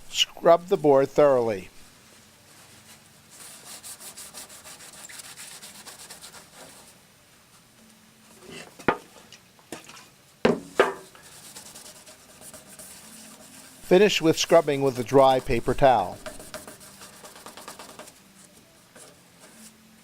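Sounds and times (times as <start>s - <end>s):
paper towel rubbing board: 2.6s - 7.0s, 11.2s - 19.8s
sharp knocks: 10.5s - 11.0s.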